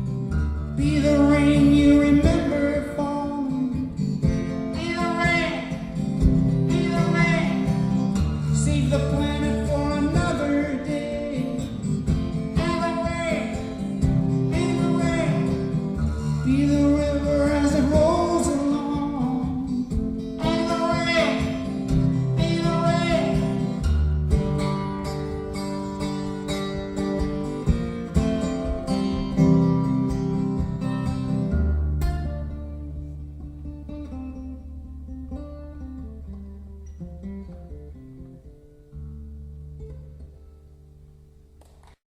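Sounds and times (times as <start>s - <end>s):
strummed acoustic guitar: 0.0s - 42.0s
person singing: 0.8s - 4.1s, 4.7s - 23.8s.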